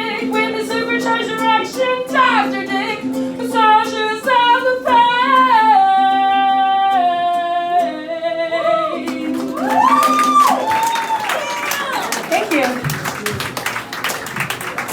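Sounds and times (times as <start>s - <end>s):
woman singing: 0.0s - 10.9s
ukulele: 0.0s - 13.6s.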